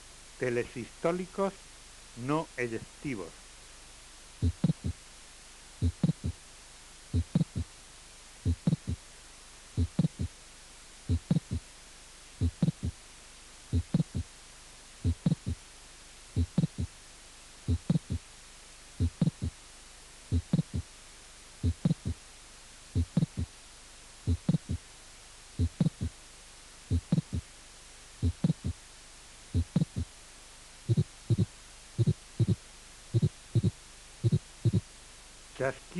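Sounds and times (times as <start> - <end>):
heartbeat: 4.4 - 5.0, 5.8 - 6.4, 7.1 - 7.7, 8.4 - 9.0, 9.7 - 10.4, 11.1 - 11.7, 12.4 - 13.0, 13.7 - 14.3, 15.0 - 15.6, 16.4 - 17.0, 17.7 - 18.3, 19.0 - 19.6, 20.3 - 20.9, 21.6 - 22.2, 23.0 - 23.6, 24.3 - 24.9, 25.6 - 26.2, 26.9 - 27.5, 28.2 - 28.8, 29.5 - 30.1, 30.9 - 34.9.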